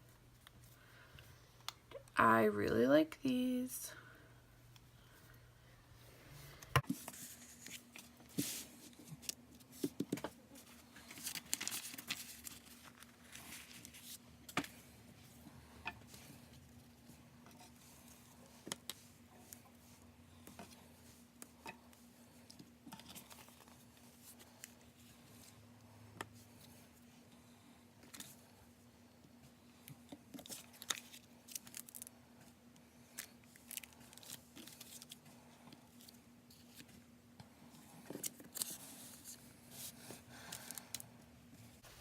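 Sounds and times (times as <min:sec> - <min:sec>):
faint steady hum: 0:00.0 - 0:42.0
tape rolls and packaging rustling: 0:06.8 - 0:14.8, 0:30.3 - 0:32.1, 0:33.1 - 0:35.2.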